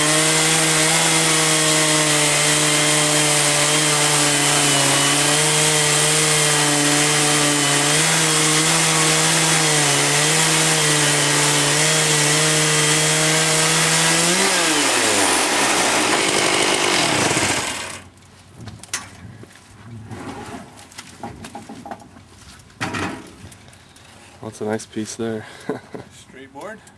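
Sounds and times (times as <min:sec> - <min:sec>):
sawmill saw cutting wood: 0:00.0 - 0:18.1.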